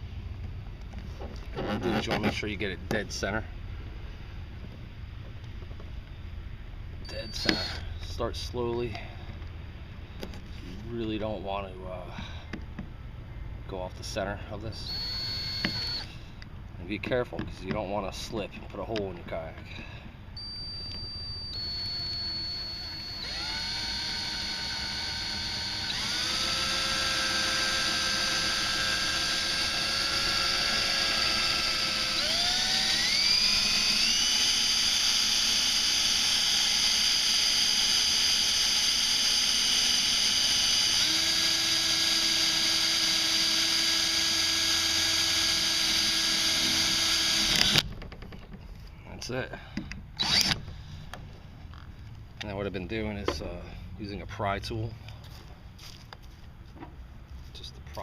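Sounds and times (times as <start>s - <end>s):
power drill motor whine: 7.0s - 8.1s, 14.8s - 16.2s, 20.4s - 47.9s, 50.2s - 50.7s.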